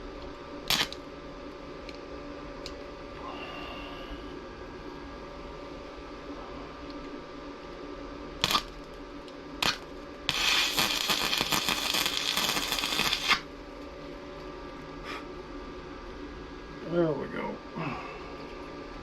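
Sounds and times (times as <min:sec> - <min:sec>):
welding arc crackling: 0:00.7 - 0:01.0, 0:08.4 - 0:08.9, 0:09.6 - 0:13.5.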